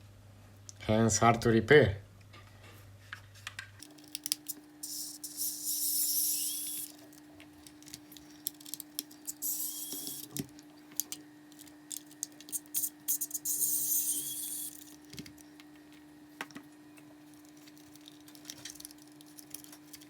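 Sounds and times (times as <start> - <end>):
hissing scrapes: 4.8 - 6.9.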